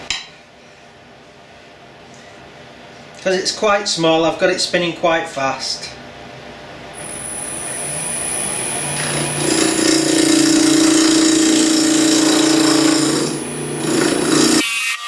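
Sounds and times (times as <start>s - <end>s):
wood lathe cutting with strong hum: 7.6s - 14.6s.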